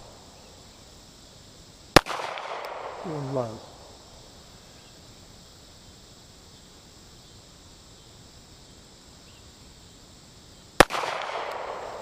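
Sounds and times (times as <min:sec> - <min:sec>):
insects chirping: 0:00.0 - 0:12.0
handgun shot with echo: 0:02.0 - 0:03.0, 0:10.8 - 0:12.0.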